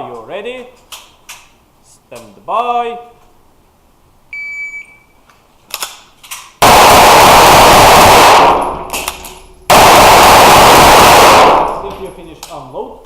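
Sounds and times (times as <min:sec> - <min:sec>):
shot timer beep: 0:04.4 - 0:05.1
rapid pistol fire: 0:06.6 - 0:11.9.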